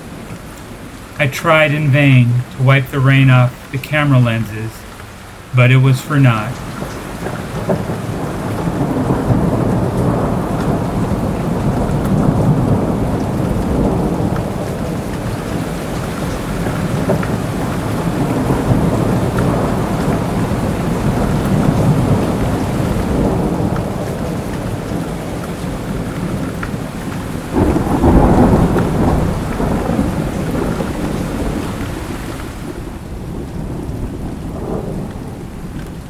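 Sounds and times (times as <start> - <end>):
steady rain falling: 0.0 - 36.0
low rolling thunder: 7.3 - 15.4, 27.6 - 31.7, 32.8 - 36.0.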